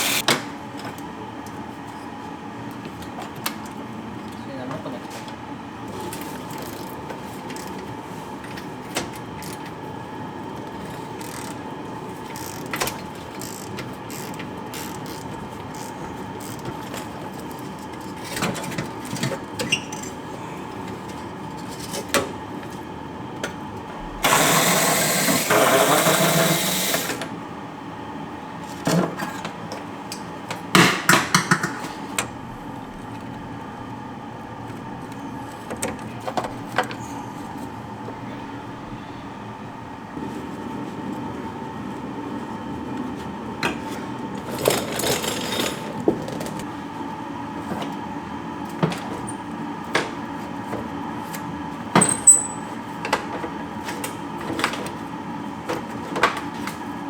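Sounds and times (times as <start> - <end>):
tools clinking on metal: 52.0 - 52.7.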